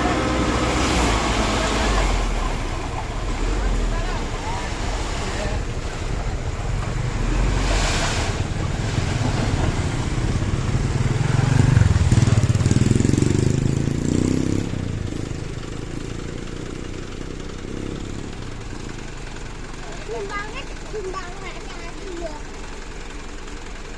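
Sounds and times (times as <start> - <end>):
excavator diesel engine running: 0.0 - 23.9.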